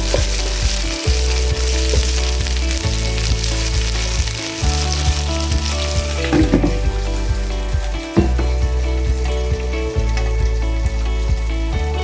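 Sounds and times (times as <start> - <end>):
background music with bass: 0.0 - 12.0
chicken pieces sizzling in oil: 0.0 - 12.0.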